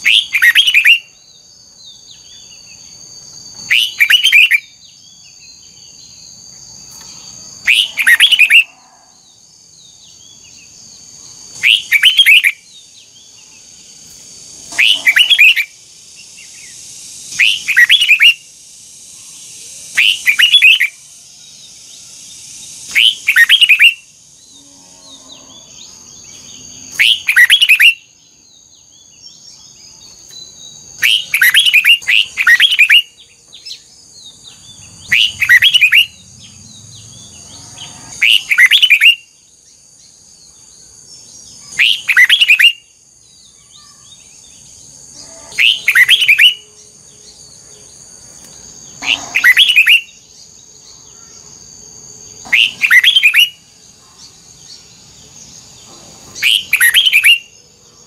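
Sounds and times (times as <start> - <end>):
bird singing whistled phrases: 0.0 - 1.1, 3.6 - 4.8, 7.6 - 8.7, 11.6 - 12.6, 14.7 - 15.7, 16.4 - 18.4, 19.2 - 21.0, 22.9 - 24.1, 27.0 - 28.1, 30.5 - 33.2, 35.1 - 36.2, 38.2 - 39.3, 41.6 - 42.9, 45.6 - 46.7, 49.1 - 50.2, 52.6 - 53.6, 56.4 - 57.5.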